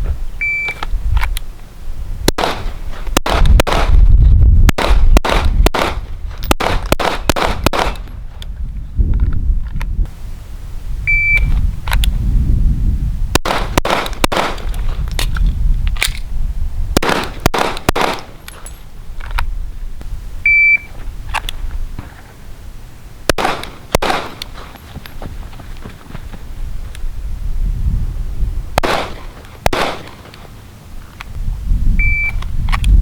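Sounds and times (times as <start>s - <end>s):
shot timer beep: 0.4s - 0.8s, 11.1s - 11.5s, 20.5s - 20.9s, 32.0s - 32.4s
pistol shots in quick succession: 2.4s - 4.0s, 4.7s - 8.1s, 13.4s - 14.7s, 17.0s - 18.4s, 23.3s - 24.7s, 28.8s - 30.3s.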